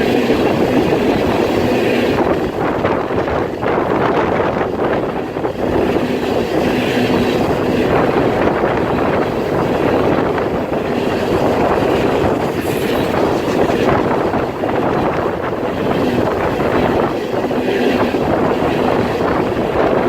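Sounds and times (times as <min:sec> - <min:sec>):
freight train rumbling past: 0:00.0 - 0:20.0
wind buffeting microphone: 0:00.0 - 0:20.0.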